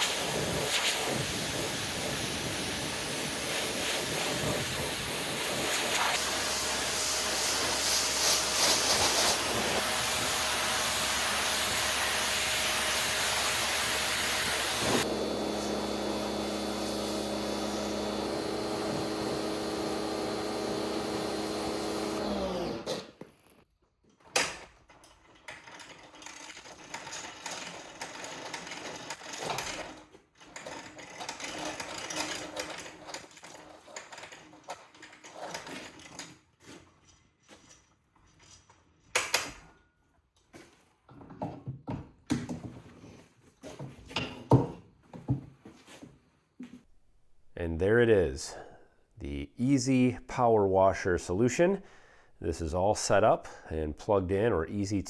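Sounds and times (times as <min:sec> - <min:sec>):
pressure washer spraying: 0:00.0 - 0:22.3
motor humming: 0:06.2 - 0:22.9.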